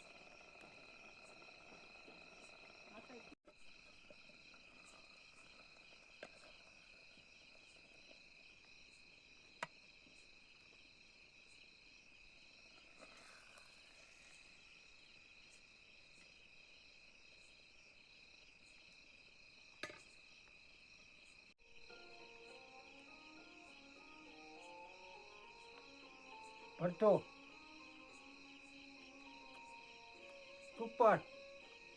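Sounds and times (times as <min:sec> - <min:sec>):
crickets chirring: 0:00.0 - 0:31.9.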